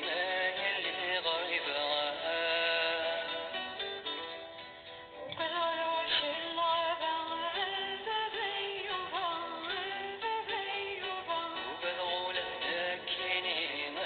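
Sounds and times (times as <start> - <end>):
song with vocals and instruments: 0.0 - 14.0.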